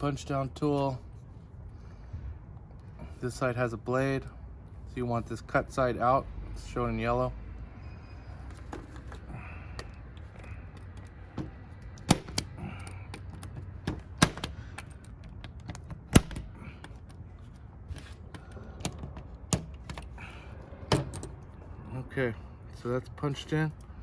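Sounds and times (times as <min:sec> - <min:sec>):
punch-down tool snapping: 0:15.7 - 0:16.6.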